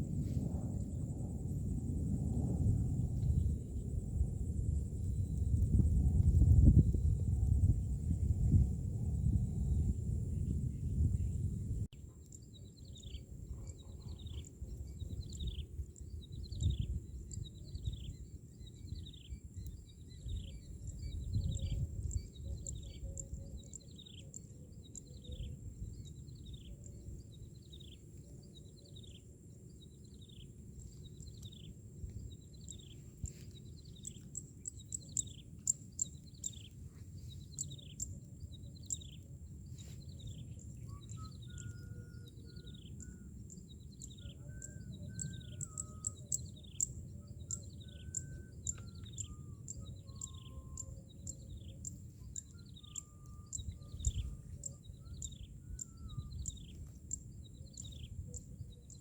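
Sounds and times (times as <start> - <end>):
low rumble of wind or water: 0.0 - 59.0.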